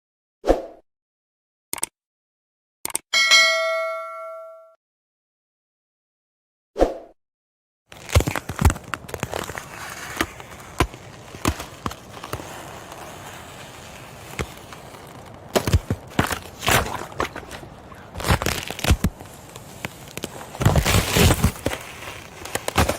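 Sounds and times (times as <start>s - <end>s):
ice cracking: 7.9s - 22.9s.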